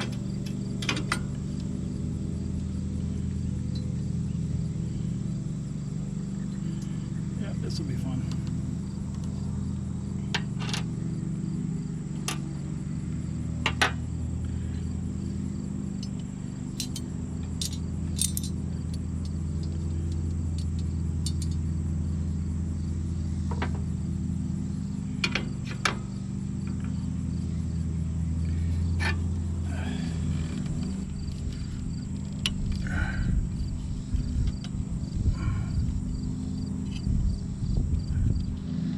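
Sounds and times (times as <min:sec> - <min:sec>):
steady low hum: 0:00.0 - 0:38.9
metal tools clinking: 0:16.0 - 0:18.6.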